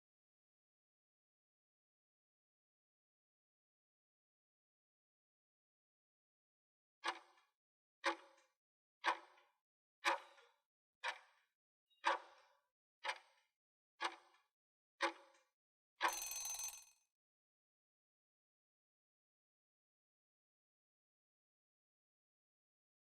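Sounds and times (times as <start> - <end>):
timer ticking: 16.0 - 16.8.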